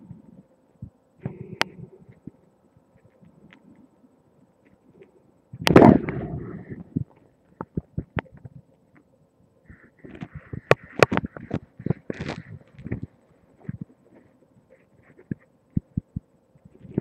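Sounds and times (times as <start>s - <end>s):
microphone rubbing rumble: 5.6s - 8.7s
crackling clicks: 10.0s - 17.0s.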